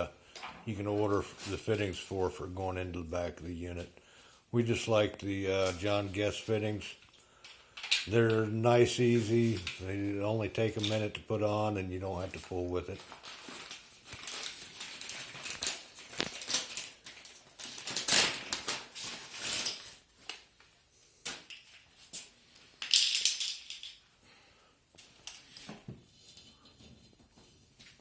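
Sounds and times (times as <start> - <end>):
rustling: 12.1 - 24.0.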